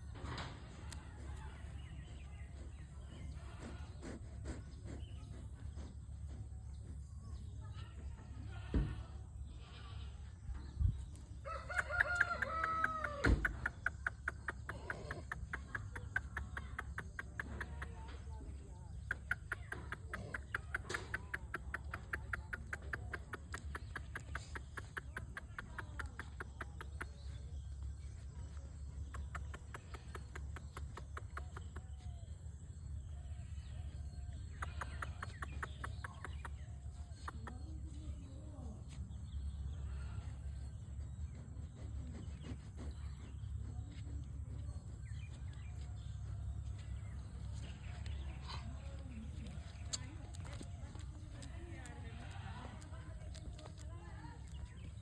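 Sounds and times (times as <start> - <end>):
steady low hum: 0.0 - 55.0
rooster crowing: 11.4 - 13.4
fast even ticks: 12.2 - 18.1, 19.0 - 27.5.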